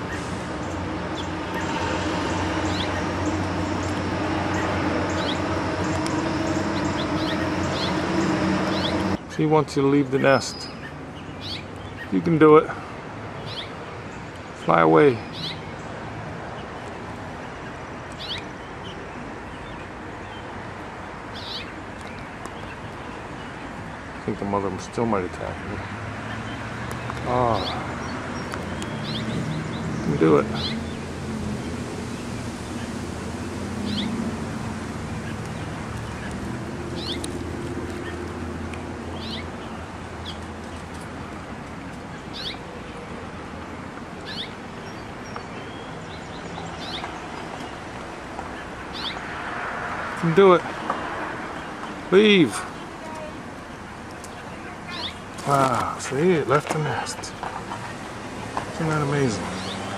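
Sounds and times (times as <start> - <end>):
robin call notes: 0.0 - 9.2
robin calls: 0.0 - 59.9
steady background noise: 0.0 - 59.9
small bird chirps: 18.1 - 19.0, 33.8 - 34.2, 35.2 - 37.3, 39.1 - 40.4, 42.0 - 42.7, 44.2 - 47.8, 48.5 - 49.2, 54.1 - 55.3.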